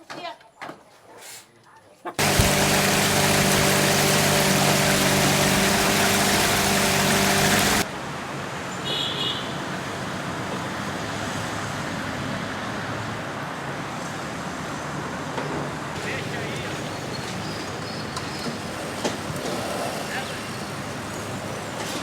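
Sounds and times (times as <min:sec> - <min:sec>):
motor running: 0:02.2 - 0:07.8
steady outdoor noise: 0:02.2 - 0:08.8.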